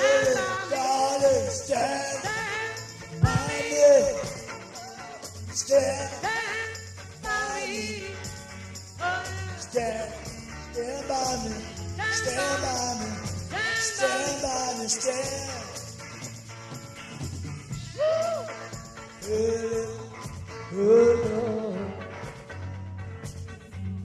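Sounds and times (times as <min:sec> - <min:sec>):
band playing rock jam: 0:00.0 - 0:11.6, 0:12.2 - 0:23.9
bass line: 0:00.0 - 0:14.6.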